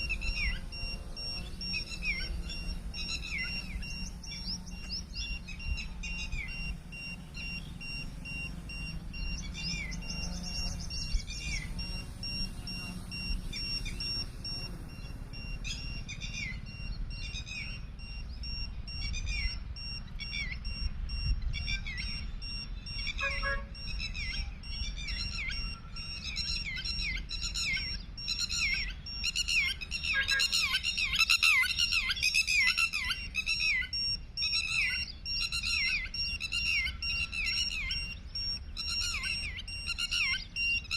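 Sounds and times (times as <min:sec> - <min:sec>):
small birds chirping: 0:00.0 - 0:40.9.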